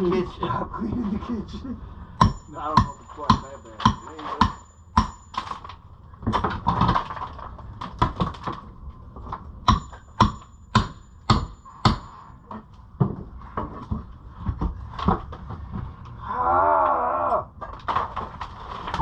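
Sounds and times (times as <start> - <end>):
hammering on wood: 2.2 - 5.5, 9.7 - 12.2.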